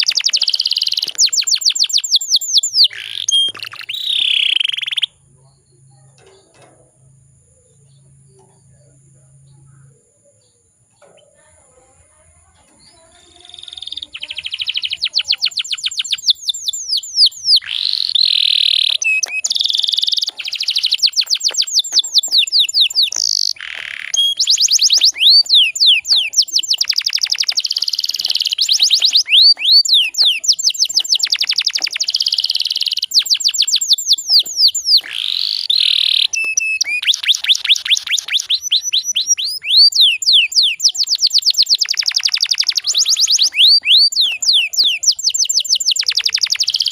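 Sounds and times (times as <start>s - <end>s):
canary singing trills: 0.0s - 46.9s.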